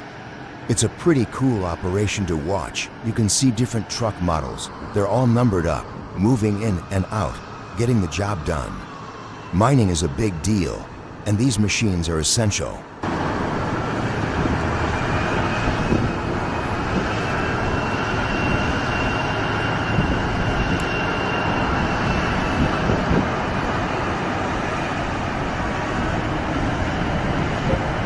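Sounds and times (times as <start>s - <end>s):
large diesel engines droning: 0.0s - 28.0s
faint high whine: 13.0s - 28.0s.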